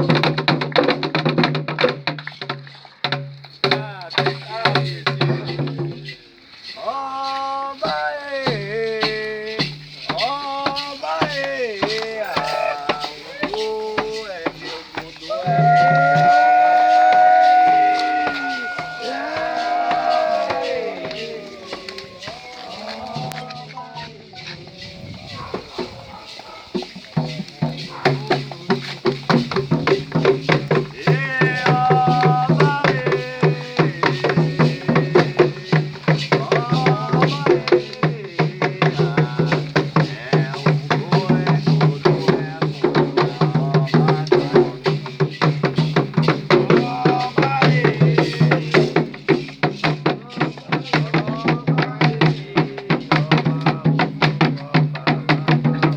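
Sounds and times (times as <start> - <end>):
sharp percussion strikes: 0.0 - 24.2, 24.8 - 55.9
hand drums beating: 0.0 - 55.9
voices chanting held notes: 2.8 - 55.9.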